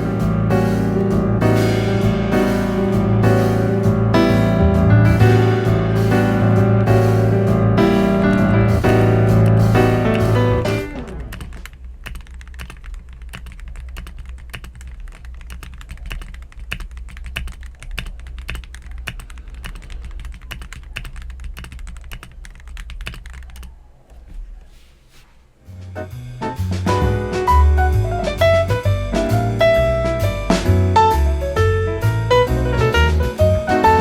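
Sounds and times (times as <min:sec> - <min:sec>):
mechanical keyboard typing: 0:10.8 - 0:23.8.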